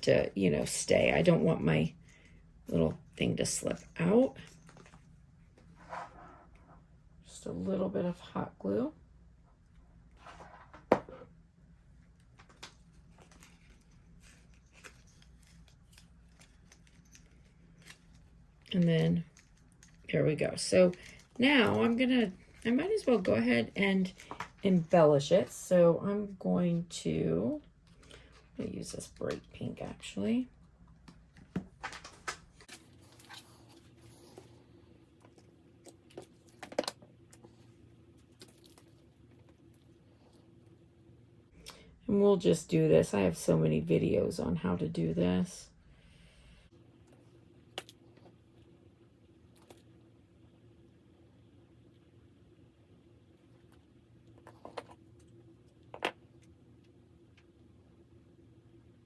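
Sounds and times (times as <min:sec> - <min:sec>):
low steady hum: 0:00.0 - 0:59.0
faint clicks and rustles: 0:11.9 - 0:25.2.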